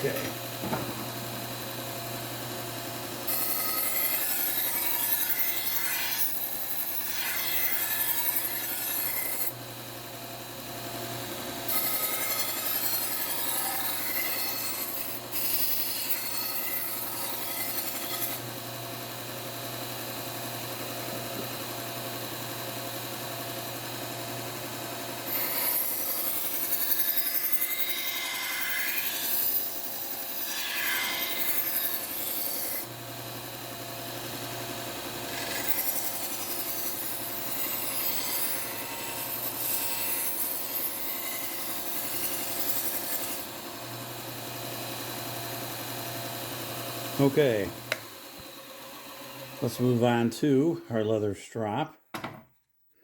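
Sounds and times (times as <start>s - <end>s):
knife grinding on sanding belt: 3.3s - 9.5s.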